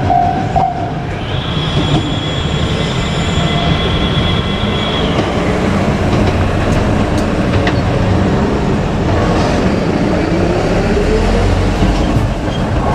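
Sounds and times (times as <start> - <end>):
train wheels rumbling on rail: 0.0 - 12.9
train motor whine rising: 1.1 - 9.9.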